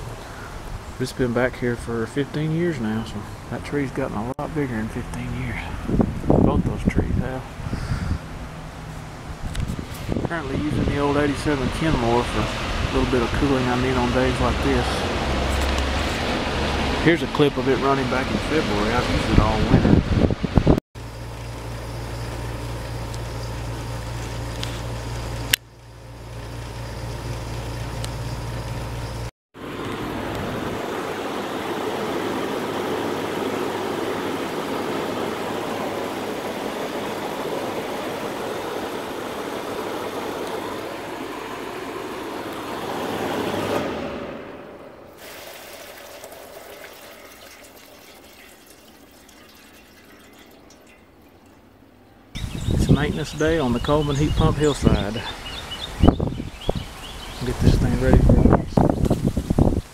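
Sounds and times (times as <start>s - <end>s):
rush of air: 7.5s - 8.6s
water trickling: 45.1s - 52.4s.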